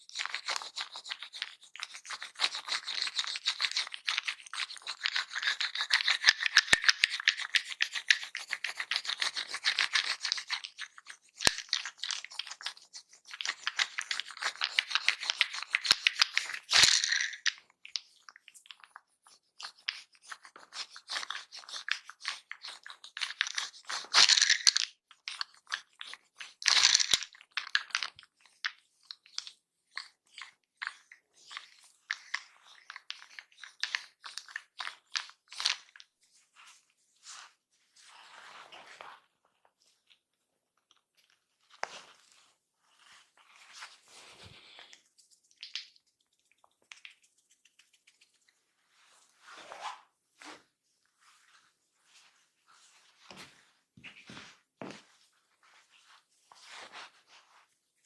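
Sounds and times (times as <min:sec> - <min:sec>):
hands rubbing and scratching hair: 0:40.8 - 0:58.0.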